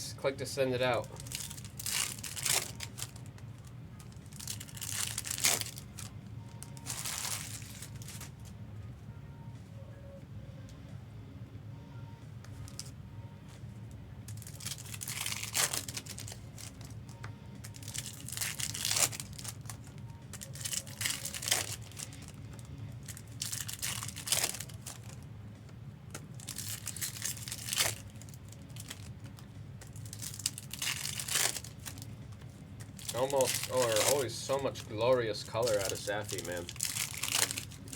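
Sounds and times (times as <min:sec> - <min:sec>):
card pack wrappers crinkling: 0:00.8 - 0:08.3, 0:14.3 - 0:25.2, 0:26.1 - 0:37.9.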